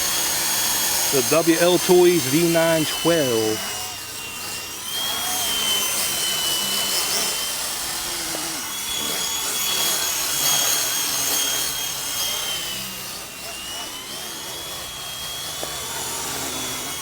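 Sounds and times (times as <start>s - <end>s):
toy helicopter rotor whine: 0.0s - 1.4s, 3.4s - 17.0s.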